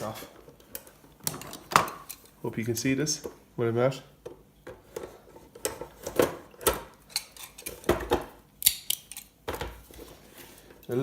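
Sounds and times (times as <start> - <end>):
plastic parts clicking and knocking: 4.2 - 9.8.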